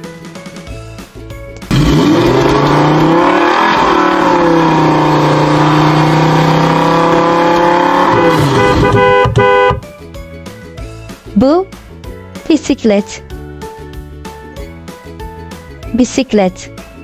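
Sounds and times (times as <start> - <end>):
car engine accelerating: 1.5 - 9.9.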